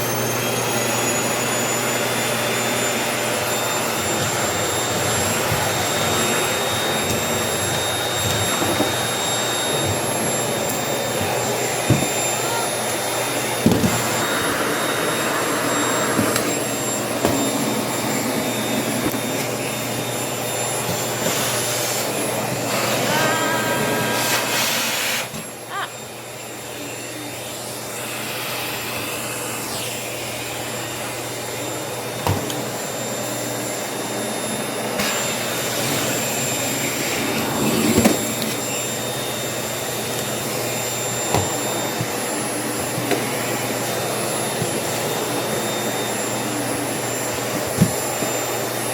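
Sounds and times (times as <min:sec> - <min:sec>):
vacuum cleaner whining: 0:00.0 - 0:48.9
vacuum nozzle knocking: 0:03.4 - 0:12.3, 0:13.6 - 0:19.6.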